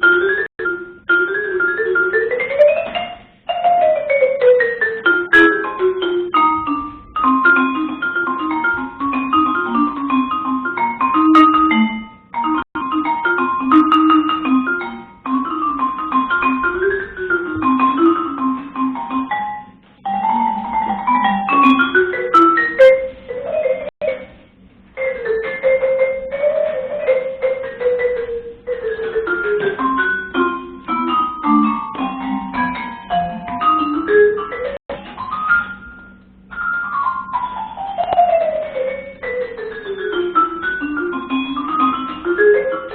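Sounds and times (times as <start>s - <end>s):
mallet percussion ringing notes: 0.0s - 24.3s, 25.0s - 42.9s.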